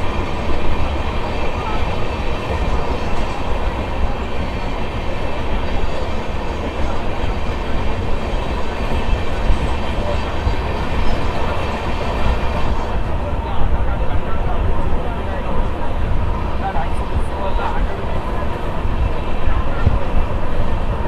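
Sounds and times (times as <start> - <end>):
train rumbling on rails: 0.0 - 21.0.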